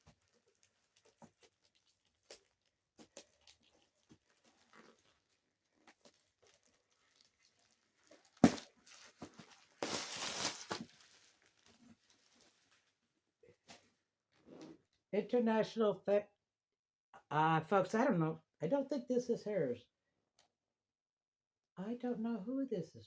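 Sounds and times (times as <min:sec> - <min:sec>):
packaging tearing: 0:00.0 - 0:12.8.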